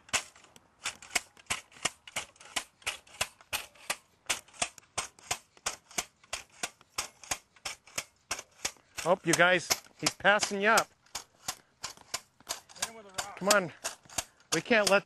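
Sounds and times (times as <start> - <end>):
staples driven into hard ground: 0.0 - 15.0.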